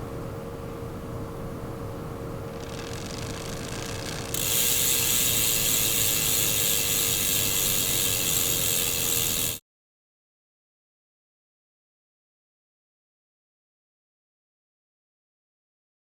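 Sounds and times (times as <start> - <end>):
bicycle freehub ratcheting: 2.5 - 9.6.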